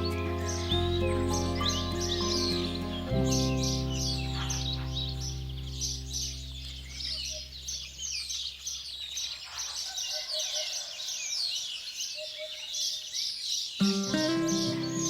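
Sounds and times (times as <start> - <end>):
held music chord: 0.0 - 7.3, 13.8 - 15.0
small songbirds chirping: 0.0 - 15.0.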